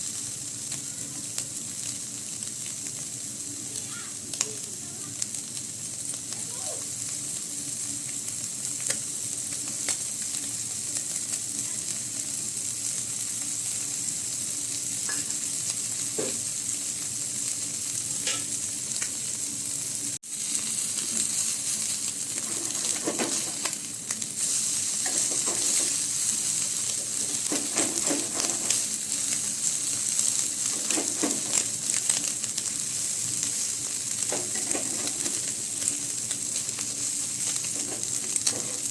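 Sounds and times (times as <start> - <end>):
fish sizzling in a pan: 0.0 - 38.9
spatula scraping a pan: 22.4 - 23.8, 24.4 - 26.0, 27.2 - 29.0.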